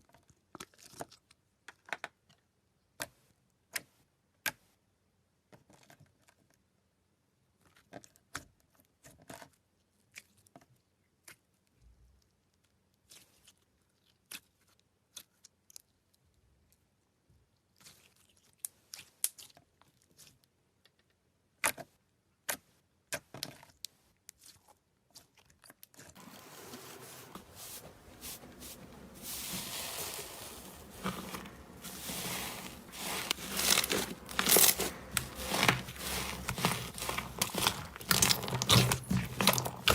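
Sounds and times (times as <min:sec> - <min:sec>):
slime crackling and crinkling: 0:26.2 - 0:39.9.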